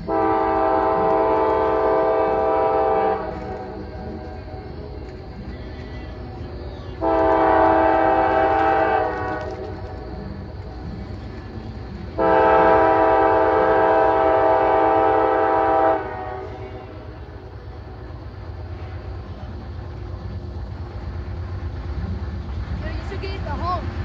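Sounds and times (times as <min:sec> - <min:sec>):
locomotive air horn blasts: 0:00.0 - 0:05.0, 0:07.0 - 0:10.2, 0:12.2 - 0:17.3.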